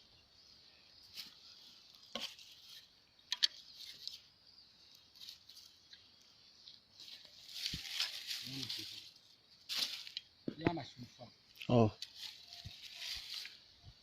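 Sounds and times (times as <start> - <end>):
steady high-pitched hiss: 0.0 - 14.0
footsteps crunching on dry vegetation: 6.9 - 10.7, 11.5 - 13.7.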